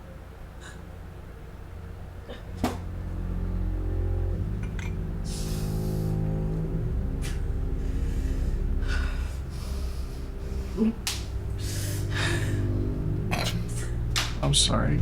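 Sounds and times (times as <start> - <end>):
low musical drone: 0.0 - 15.0
person breathing sharply through nose: 11.6 - 12.8.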